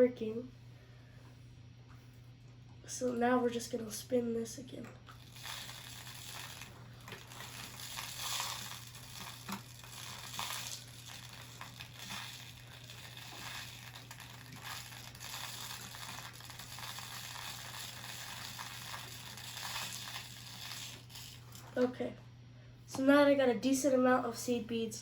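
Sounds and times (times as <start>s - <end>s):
beads rustling in spinning bowl: 5.1s - 21.8s.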